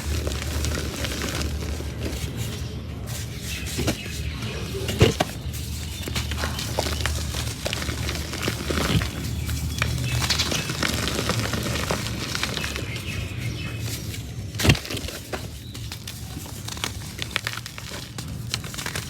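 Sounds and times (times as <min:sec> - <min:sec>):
cement crumbling by hand: 0:00.0 - 0:19.0.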